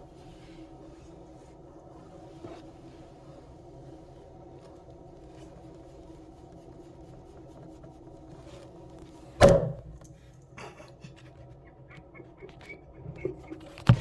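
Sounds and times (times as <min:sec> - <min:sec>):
sudden loud thump: 0:09.4 - 0:10.1.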